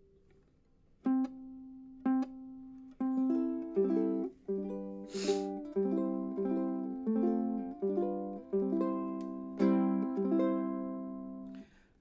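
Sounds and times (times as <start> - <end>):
ukulele strumming chords: 1.0 - 11.6
short hiss: 5.1 - 5.6.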